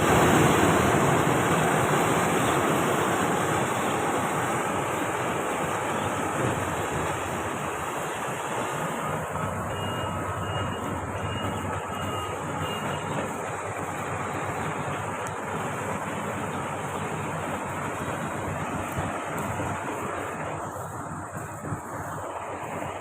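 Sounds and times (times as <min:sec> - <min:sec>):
combine harvester running: 0:00.0 - 0:23.0
faint high beep: 0:09.6 - 0:13.2.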